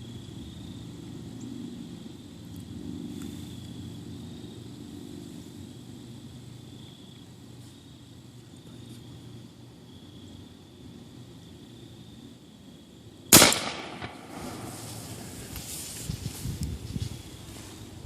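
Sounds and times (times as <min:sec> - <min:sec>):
insects trilling: 0:00.0 - 0:18.0
steady low rumble: 0:13.4 - 0:18.0.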